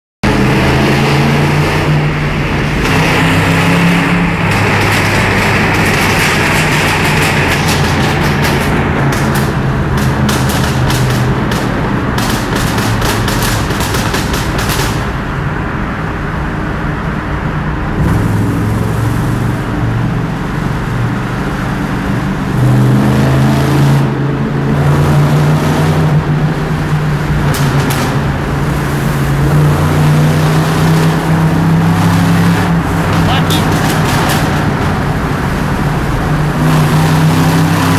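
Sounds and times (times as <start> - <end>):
car engine accelerating: 0.2 - 15.0, 17.0 - 37.9
sharp cracks: 4.4 - 15.2.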